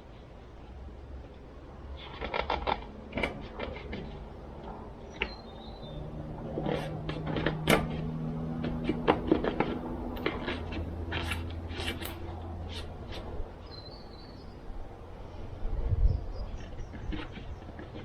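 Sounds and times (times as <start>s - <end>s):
steady low hum: 0.0s - 18.0s
tools and parts clattering: 6.5s - 13.2s.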